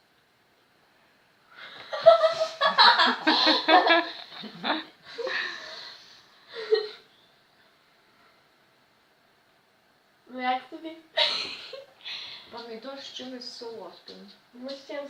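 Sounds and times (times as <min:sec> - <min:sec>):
person laughing in bursts: 0:01.8 - 0:05.5, 0:11.2 - 0:11.9.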